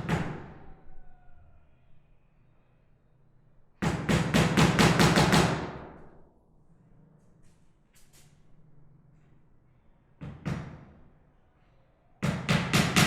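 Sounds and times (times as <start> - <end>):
hammer driving nails into wood: 12.3 - 13.0.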